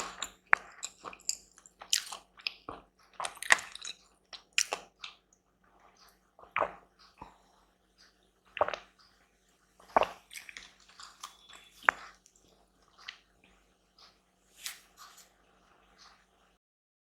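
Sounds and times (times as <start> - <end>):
person chewing wetly: 0.0 - 16.4.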